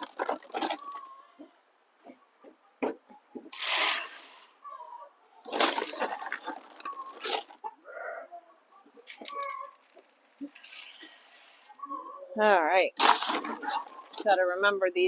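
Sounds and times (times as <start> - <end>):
feed pouring from metal scoop: 3.5 - 4.5.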